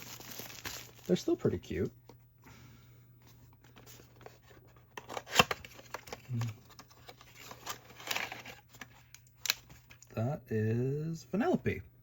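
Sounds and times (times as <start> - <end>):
toy package rustling and scraping: 0.0 - 1.8, 3.2 - 10.1.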